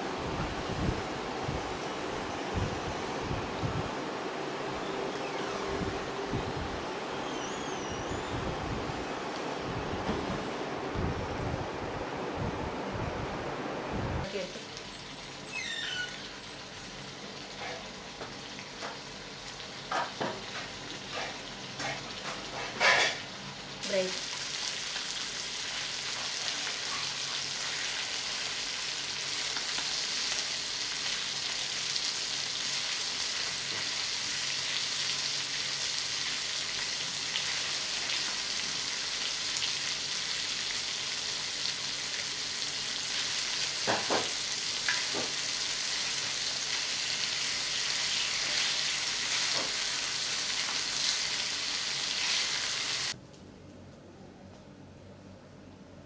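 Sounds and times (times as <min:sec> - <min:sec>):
fish sizzling in oil: 0:14.4 - 0:53.2.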